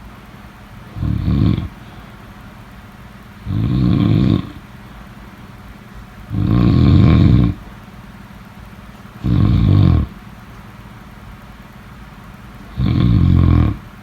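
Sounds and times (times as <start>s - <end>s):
loud snoring: 0.9s - 1.8s, 3.4s - 4.6s, 6.3s - 7.6s, 9.2s - 10.2s, 12.7s - 14.0s.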